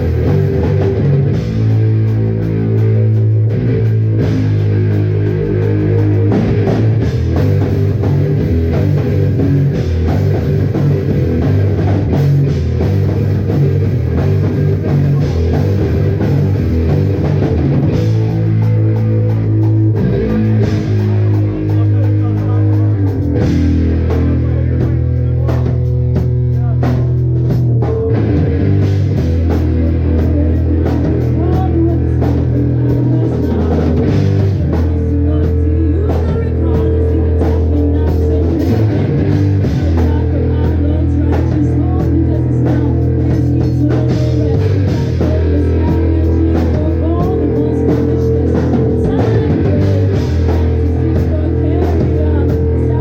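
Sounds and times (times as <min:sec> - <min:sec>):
distorted guitar: 0:00.0 - 0:53.0
drum kit: 0:00.0 - 0:53.0
live rock band playing: 0:00.0 - 0:53.0.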